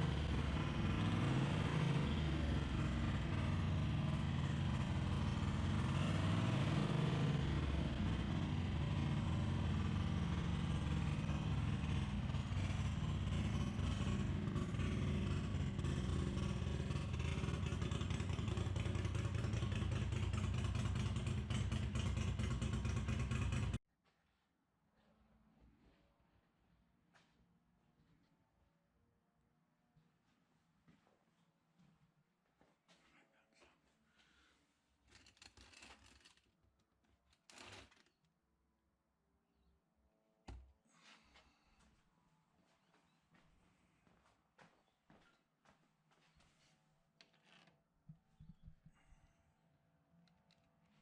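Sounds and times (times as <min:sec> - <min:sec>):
motorcycle engine running: 0:00.0 - 0:23.8
dense mechanical clatter: 0:07.4 - 0:23.8.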